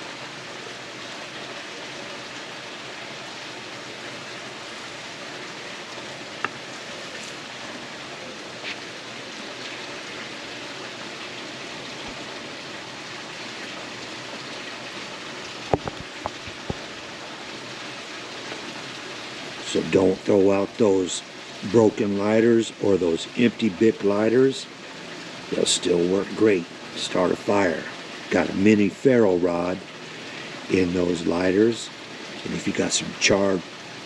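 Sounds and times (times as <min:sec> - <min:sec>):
fire crackling: 0:02.4 - 0:29.0.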